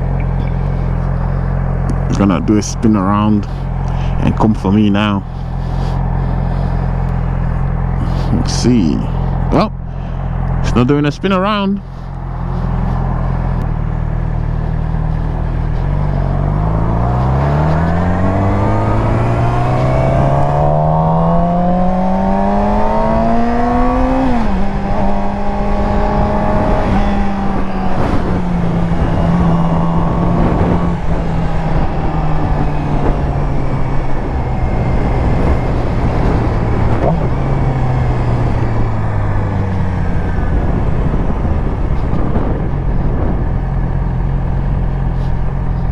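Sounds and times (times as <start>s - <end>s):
motorcycle engine revving: 0.0s - 45.9s
wind noise: 14.6s - 45.9s.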